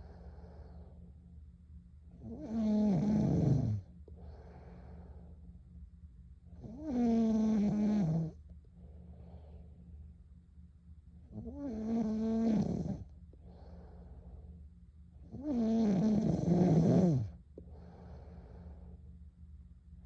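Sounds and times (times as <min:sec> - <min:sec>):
soft breaths: 0:00.0 - 0:01.4, 0:02.4 - 0:05.8, 0:06.7 - 0:10.2, 0:11.4 - 0:15.5, 0:16.2 - 0:19.4
girl snoring: 0:02.2 - 0:03.8, 0:06.6 - 0:08.4, 0:11.3 - 0:13.1, 0:15.3 - 0:17.4.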